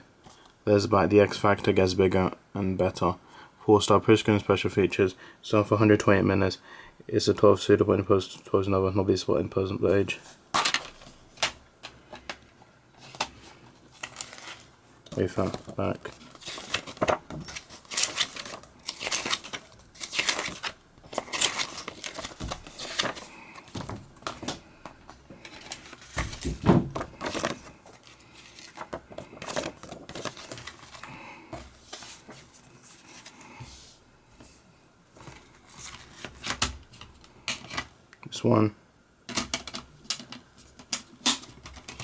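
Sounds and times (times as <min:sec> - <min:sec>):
plastic wrapping crinkling and tearing: 0:13.9 - 0:24.6.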